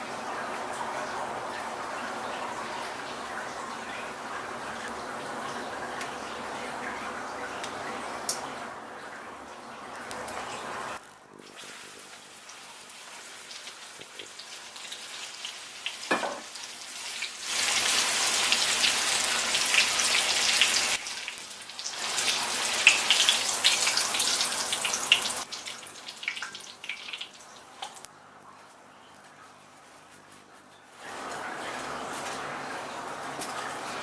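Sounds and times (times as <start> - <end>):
food sizzling in hot oil: 11.4 - 28.0.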